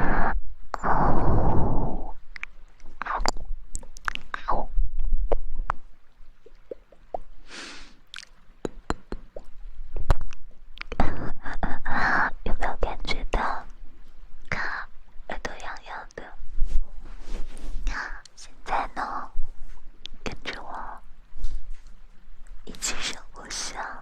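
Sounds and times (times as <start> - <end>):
crackles clicks and soft squishes: 2.1 - 11.2, 12.5 - 24.0.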